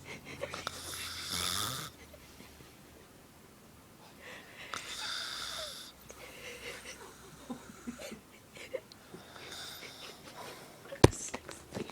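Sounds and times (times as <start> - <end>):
man snoring: 0.6 - 2.0, 4.8 - 6.0.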